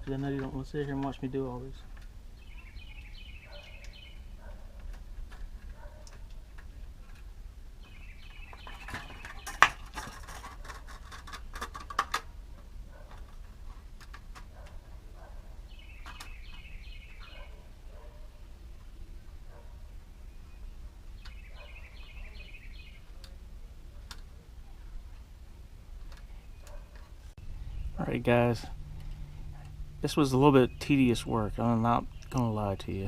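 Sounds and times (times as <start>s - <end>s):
birds chirping: 0.0s - 33.0s
low steady background noise: 0.0s - 33.0s
sharp clicks and rattles: 4.8s - 14.8s.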